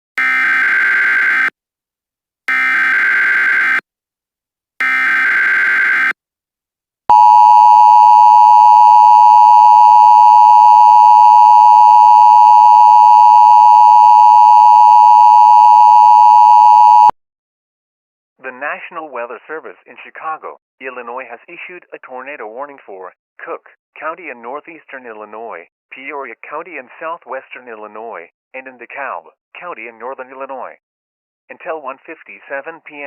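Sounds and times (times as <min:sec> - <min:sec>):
two-tone attention signal: 0:07.1 - 0:17.1.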